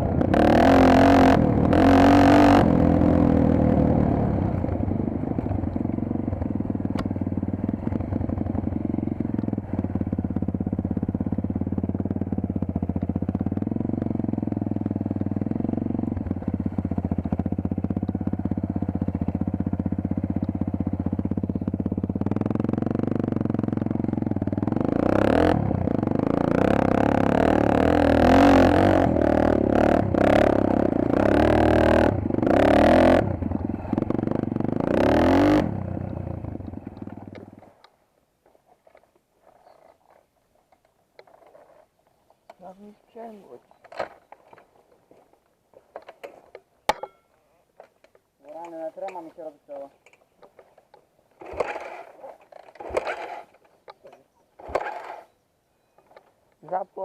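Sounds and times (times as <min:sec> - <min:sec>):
dirt bike engine revving: 0:00.0 - 0:37.6, 0:51.4 - 0:53.7, 0:54.6 - 0:55.4.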